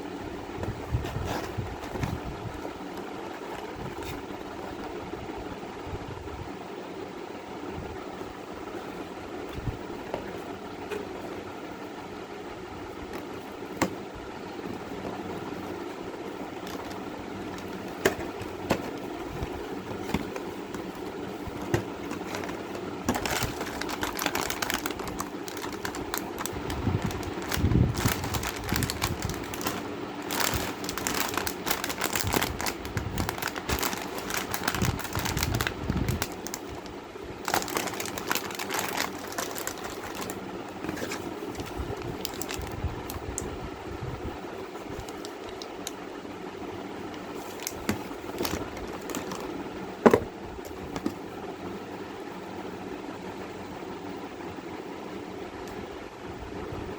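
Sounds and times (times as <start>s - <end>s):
steady hum: 0.0s - 56.9s
plastic wrappers crinkling: 16.6s - 19.1s, 19.8s - 43.2s, 47.4s - 49.5s.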